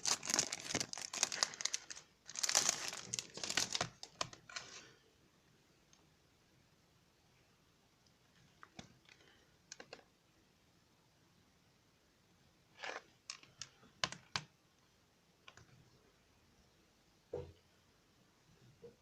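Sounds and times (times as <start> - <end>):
packaging rustle: 0.0 - 4.9.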